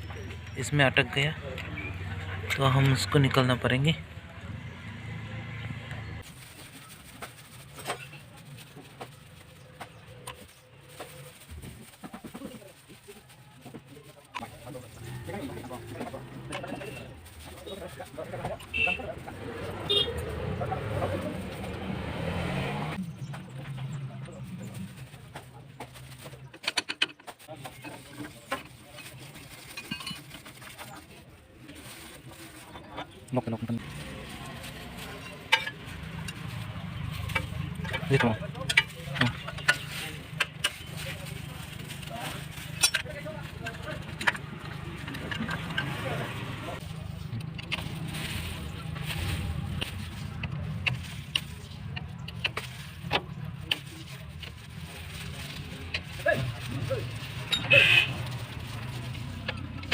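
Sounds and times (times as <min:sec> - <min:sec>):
metal tools clicking and clinking: 0:42.7 - 0:43.1.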